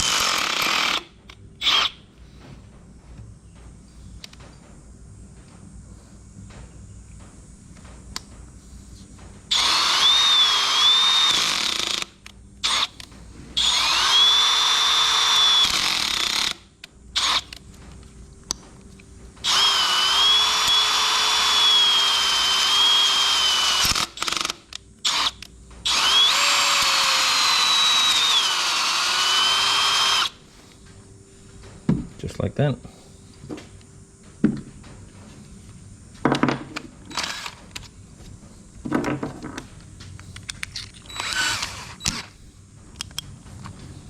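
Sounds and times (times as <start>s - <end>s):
electric drill boring: 0.0s - 2.0s, 9.5s - 12.9s, 13.6s - 16.6s, 17.2s - 17.6s, 19.4s - 30.4s, 37.1s - 37.6s, 40.8s - 42.3s.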